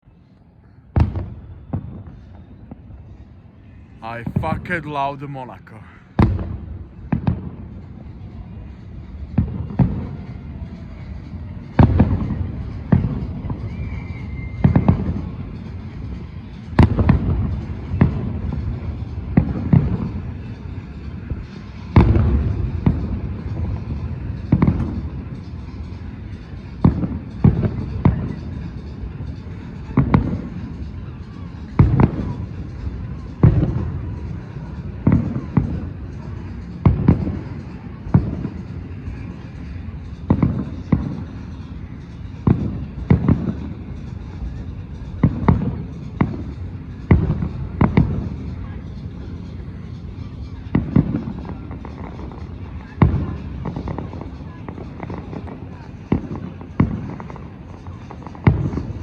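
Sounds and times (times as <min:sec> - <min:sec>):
fireworks bangs: 0:00.9 - 0:03.2, 0:04.0 - 0:10.4, 0:11.0 - 0:25.8, 0:26.7 - 0:41.7, 0:42.3 - 0:44.3, 0:45.0 - 0:48.6, 0:50.6 - 0:59.0
low rumbling echo: 0:00.9 - 0:08.1.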